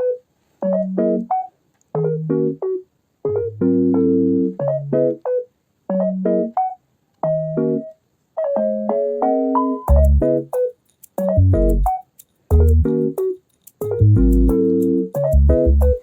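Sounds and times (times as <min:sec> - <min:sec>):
piano-like keyboard chords: 0:00.0 - 0:01.4, 0:02.0 - 0:16.0
bass notes: 0:09.9 - 0:10.4, 0:11.3 - 0:11.9, 0:12.5 - 0:13.1, 0:13.8 - 0:14.6, 0:15.2 - 0:16.0.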